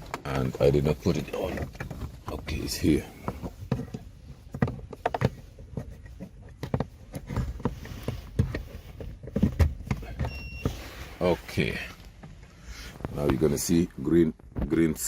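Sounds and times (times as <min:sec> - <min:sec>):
short electronic beep: 0:10.3 - 0:10.8.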